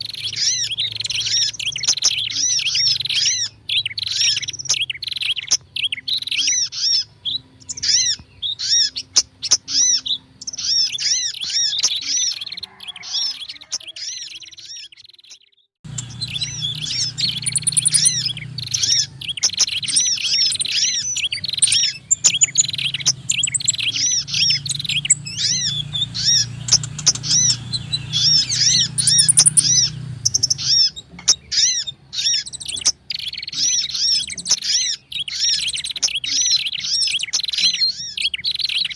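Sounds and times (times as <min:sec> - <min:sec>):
small birds chirping: 0:00.0 - 0:38.9
low hum: 0:15.9 - 0:31.0.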